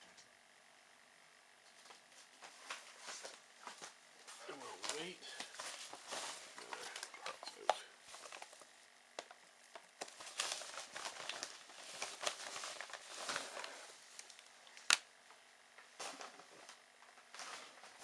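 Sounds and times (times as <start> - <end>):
packaging crinkling: 4.8 - 15.0.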